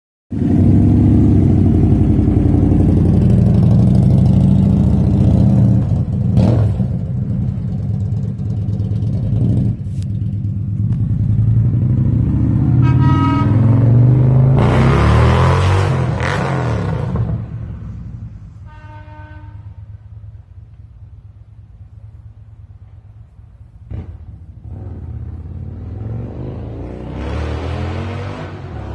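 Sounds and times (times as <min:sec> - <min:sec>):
motorcycle air horn blast: 0:12.8 - 0:13.8, 0:18.5 - 0:20.0.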